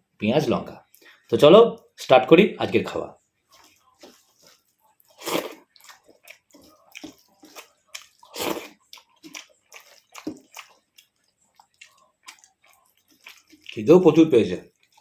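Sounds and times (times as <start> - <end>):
wet squishing of food: 3.3 - 15.0
chewing and biting: 3.6 - 14.0, 14.6 - 15.0.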